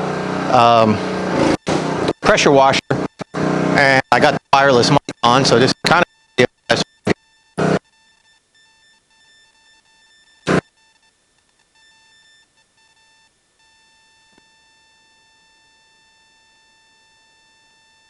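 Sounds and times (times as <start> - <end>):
loud bursts of noise: 0.0 - 4.4, 10.4 - 10.6
faint electronic tone: 0.0 - 18.0.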